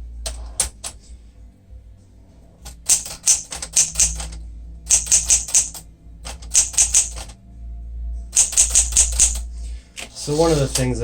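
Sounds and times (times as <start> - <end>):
manual typewriter keystrokes: 0.3 - 1.0, 2.7 - 7.3, 8.4 - 9.5.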